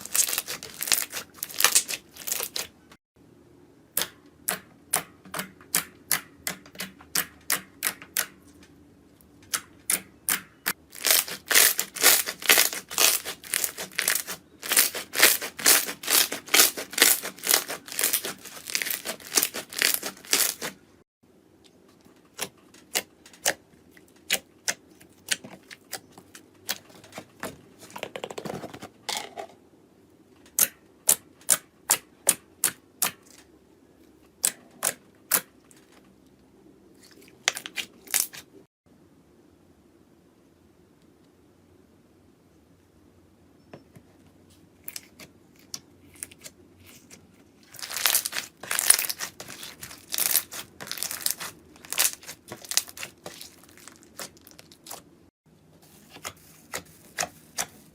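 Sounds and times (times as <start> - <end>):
squishy slime rustle: 0.0 - 2.9, 10.9 - 20.9, 44.5 - 55.1, 55.8 - 57.9
slime popping: 11.0 - 20.7, 47.8 - 55.0.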